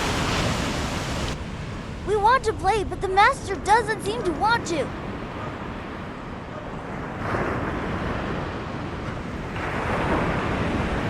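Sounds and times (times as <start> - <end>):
surf rushing onto beach: 0.0 - 2.1
wind buffeting microphone: 0.0 - 11.0.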